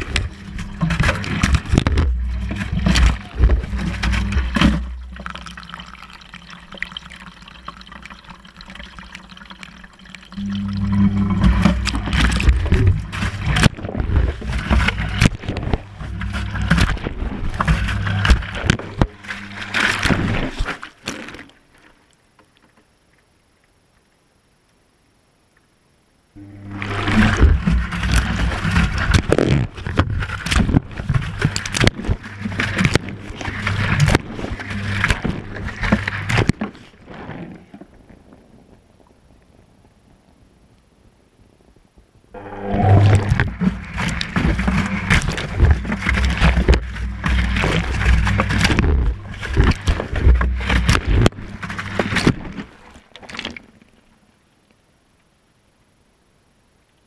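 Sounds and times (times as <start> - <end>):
washing machine drum humming: 0.0 - 20.2, 26.4 - 36.5
water and laundry sloshing: 0.0 - 22.1, 26.4 - 38.4, 42.6 - 54.1.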